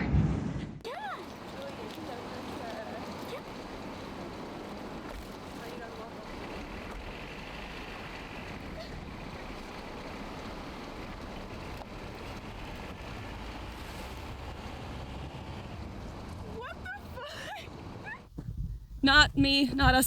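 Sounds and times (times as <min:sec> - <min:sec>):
car driving through snow: 0:02.7 - 0:17.0.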